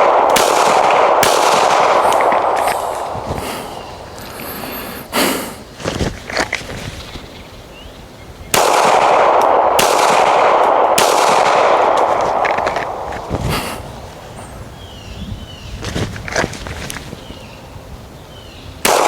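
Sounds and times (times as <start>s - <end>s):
pistol shots: 0.0s - 4.8s, 8.5s - 13.8s
loud steady rushing noise: 0.0s - 6.8s.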